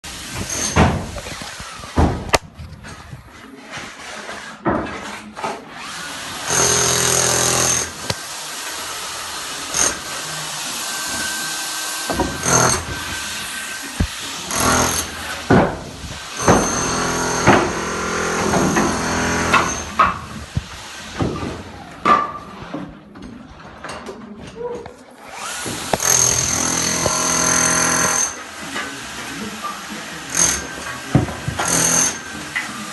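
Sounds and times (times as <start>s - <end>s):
power tool running: 5.8s - 21.4s, 25.2s - 32.9s
knocks and bangs: 14.0s - 23.0s.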